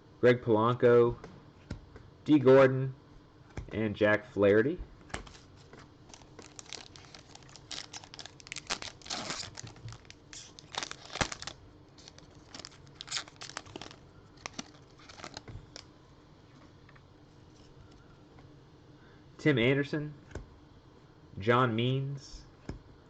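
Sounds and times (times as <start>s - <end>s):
wrapper crinkling and tearing: 6.1s - 15.8s.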